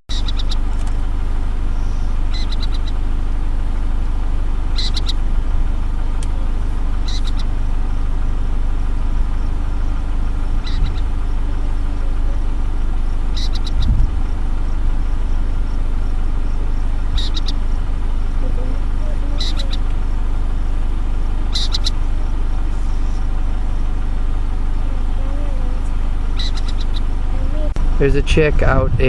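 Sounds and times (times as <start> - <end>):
owls chattering: 0.1 - 0.7, 1.8 - 3.1, 4.6 - 5.3, 7.0 - 7.7, 9.2 - 14.7, 15.6 - 20.2, 21.4 - 23.6, 24.6 - 29.0
car engine idling: 0.1 - 29.0.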